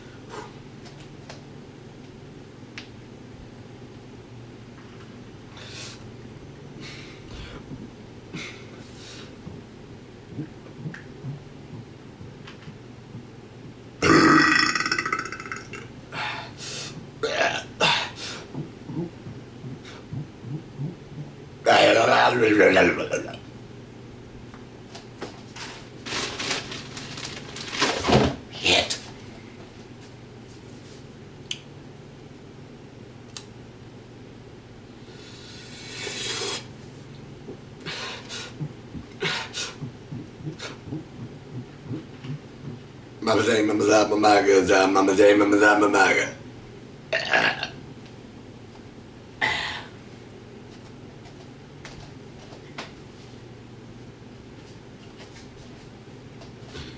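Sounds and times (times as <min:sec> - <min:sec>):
noisy mouth breathing: 0:10.3 - 0:11.9, 0:17.8 - 0:21.4, 0:35.0 - 0:36.7, 0:37.8 - 0:42.9
man burping: 0:14.0 - 0:15.9, 0:17.2 - 0:18.2, 0:47.1 - 0:47.8.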